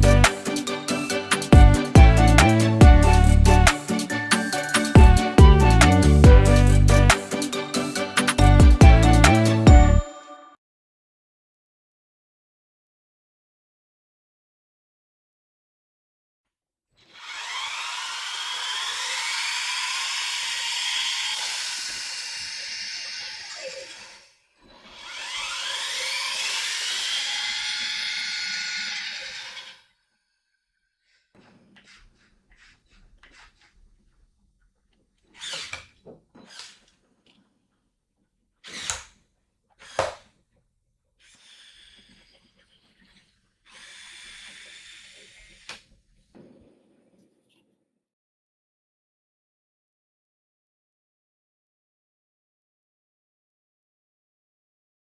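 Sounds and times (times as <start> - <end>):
toy car electric motor whining: 17.0 - 31.3, 35.3 - 36.9, 38.6 - 39.2, 39.8 - 40.3, 41.2 - 45.9.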